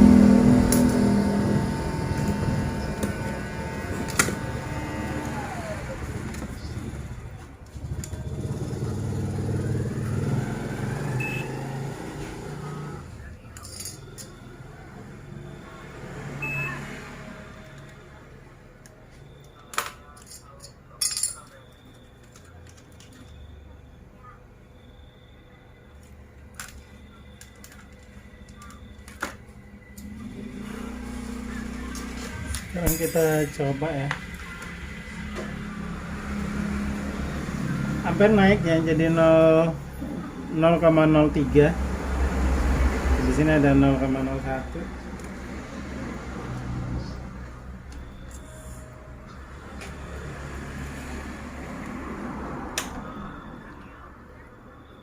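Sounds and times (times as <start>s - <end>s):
low hum: 0.0s - 11.9s
vehicle engines passing: 0.0s - 19.3s, 29.5s - 55.0s.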